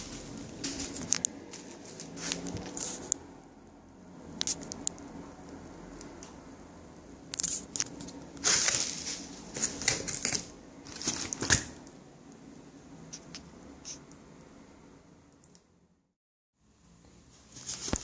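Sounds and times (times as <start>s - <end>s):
packaging rustling and tearing: 7.4s - 11.8s.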